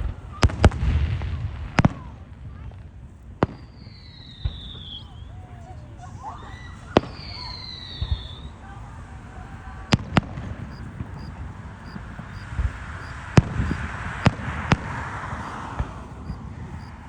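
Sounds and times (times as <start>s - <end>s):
fireworks bangs: 0.0s - 5.4s, 6.9s - 17.0s
fireworks crackling hiss: 0.0s - 17.0s.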